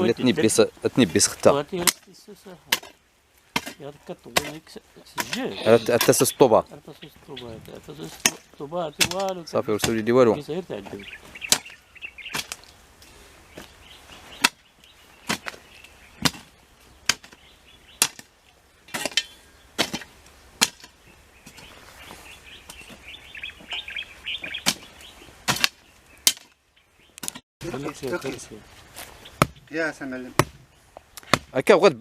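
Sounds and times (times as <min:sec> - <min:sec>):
birds chirping faintly: 0:00.0 - 0:32.0
digging tool chopping into ground: 0:01.8 - 0:06.2, 0:08.1 - 0:10.1, 0:11.5 - 0:12.6, 0:14.4 - 0:14.6, 0:15.2 - 0:15.6, 0:16.2 - 0:17.4, 0:18.0 - 0:18.3, 0:18.9 - 0:21.7, 0:24.5 - 0:26.6, 0:29.4 - 0:29.7, 0:30.3 - 0:30.6, 0:31.2 - 0:31.6.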